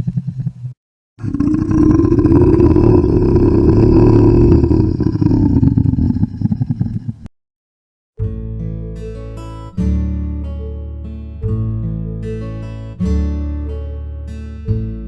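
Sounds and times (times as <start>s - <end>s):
zombie groaning: 1.2s - 7.3s.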